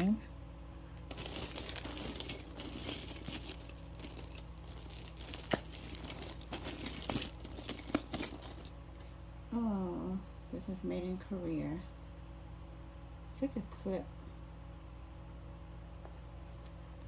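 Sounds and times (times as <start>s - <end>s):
jewelry jangling and clinking: 1.1s - 8.7s
metal pieces clicking together: 1.1s - 8.7s.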